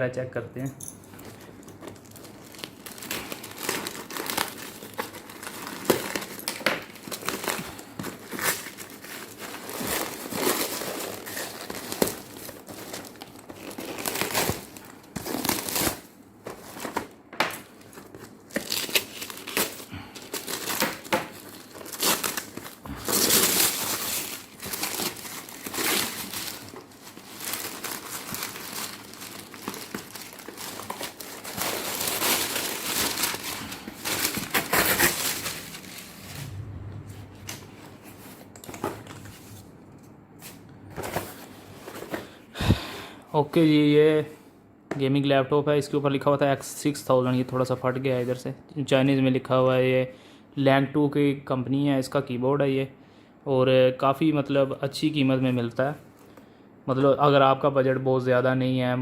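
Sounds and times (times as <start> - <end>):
wrapping crinkling and rustling: 1.1 - 42.8
packaging tearing: 2.0 - 17.1, 17.7 - 36.6.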